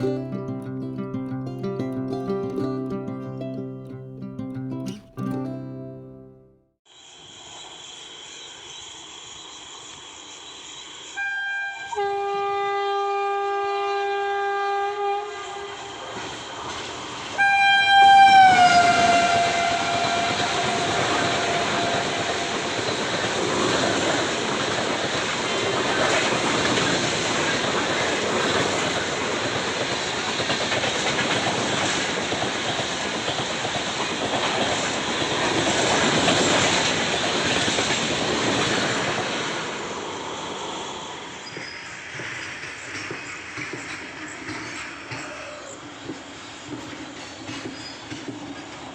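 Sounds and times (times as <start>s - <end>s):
train horn blast: 11.2s - 15.8s, 17.4s - 22.8s
train coaches rushing and clattering: 15.7s - 48.9s.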